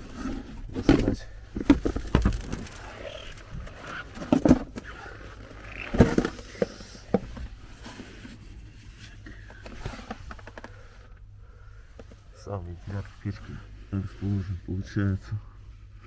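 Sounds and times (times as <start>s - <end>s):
rustling behind plastic trim: 0.0s - 11.2s.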